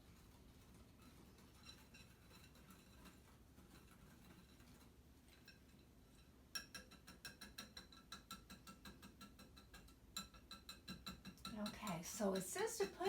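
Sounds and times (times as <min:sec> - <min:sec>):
whisk clicking against bowl: 0:06.6 - 0:13.0.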